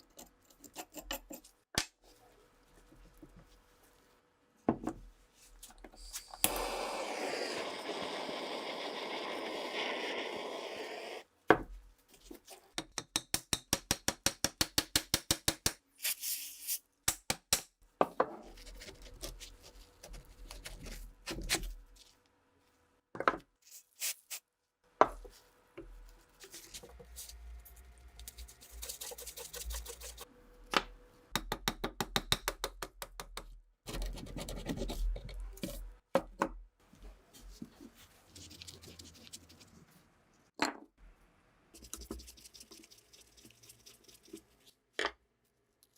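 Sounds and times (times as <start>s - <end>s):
scraping and rubbing: 28.2s - 30.3s.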